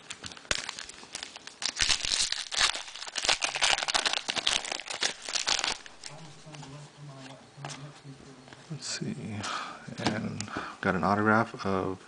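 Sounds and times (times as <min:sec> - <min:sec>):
trading cards crinkling: 0:00.0 - 0:07.9.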